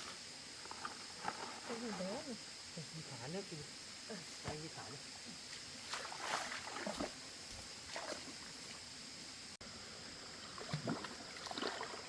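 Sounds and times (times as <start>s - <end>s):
faint steady hiss: 0.0s - 12.0s
shallow water splashing: 5.8s - 8.6s, 10.3s - 12.0s.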